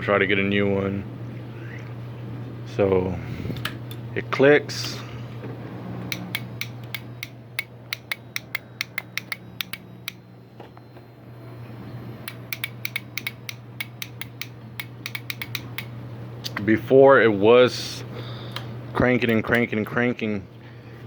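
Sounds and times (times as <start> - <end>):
low steady hum: 0.0 - 21.0
starter relay clicking: 6.1 - 10.2, 12.2 - 16.6.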